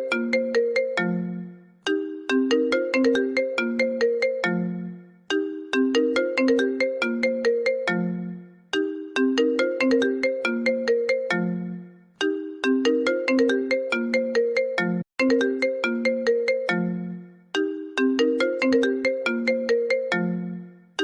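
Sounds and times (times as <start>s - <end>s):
phone ringtone melody: 0.0s - 21.0s.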